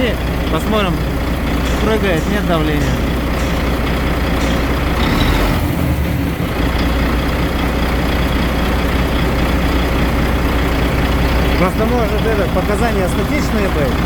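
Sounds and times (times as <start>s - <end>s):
diesel truck engine idling: 0.0s - 14.0s.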